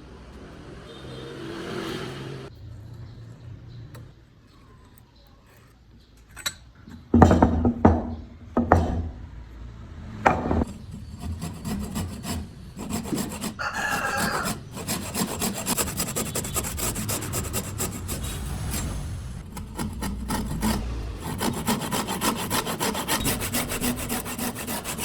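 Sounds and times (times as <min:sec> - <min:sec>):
rasping strokes on wood: 0:10.6 - 0:25.0.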